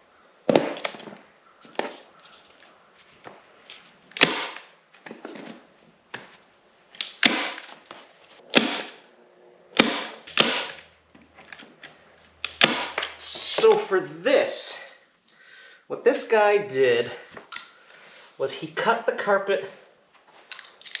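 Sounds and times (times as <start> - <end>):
staple gun firing: 9.8 - 10.8, 12.4 - 13.2.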